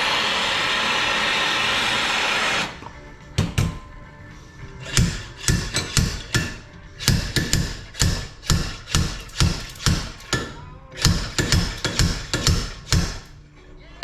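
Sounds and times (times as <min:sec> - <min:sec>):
hammer striking metal: 0:04.7 - 0:13.3.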